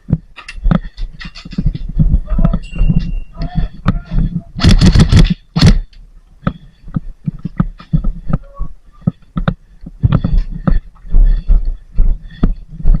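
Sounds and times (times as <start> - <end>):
sharp knocks and thuds: 0.0 - 8.4.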